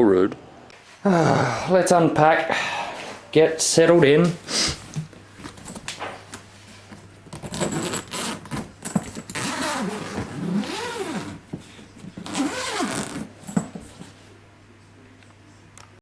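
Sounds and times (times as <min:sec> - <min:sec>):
bag zipper rasping: 0:07.4 - 0:11.4, 0:12.2 - 0:13.3.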